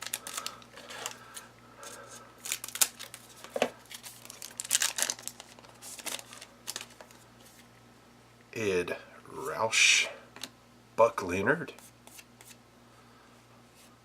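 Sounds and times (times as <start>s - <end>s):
card wrapper crinkling: 0.0s - 7.6s.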